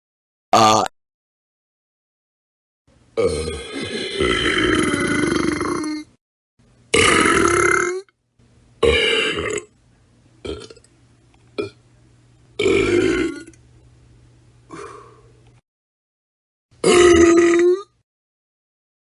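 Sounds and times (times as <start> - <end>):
person burping loudly: 0.6 - 0.9, 3.2 - 6.1, 6.9 - 8.1, 8.8 - 9.7, 10.4 - 10.8, 12.6 - 13.6, 16.8 - 18.0.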